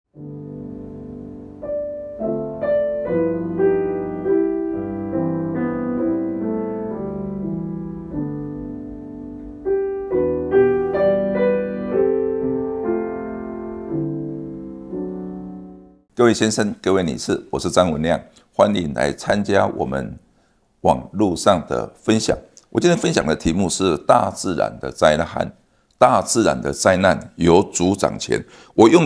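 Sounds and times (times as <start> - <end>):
gentle piano music: 0.1 - 16.1.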